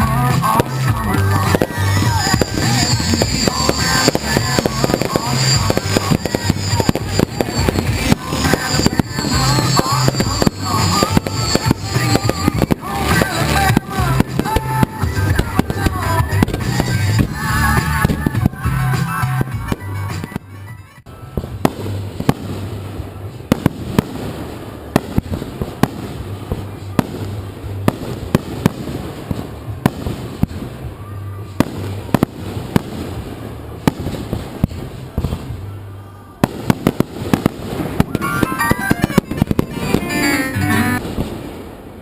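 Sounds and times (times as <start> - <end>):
music with steady bass line: 0.0 - 22.3, 38.2 - 41.0
fireworks banging: 0.0 - 35.7, 36.4 - 42.0
fireworks crackling: 0.0 - 42.0.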